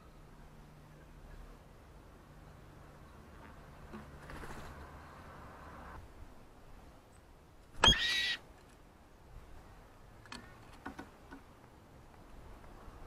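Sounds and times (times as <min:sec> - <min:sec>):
garden bird call: 0:07.7 - 0:08.5.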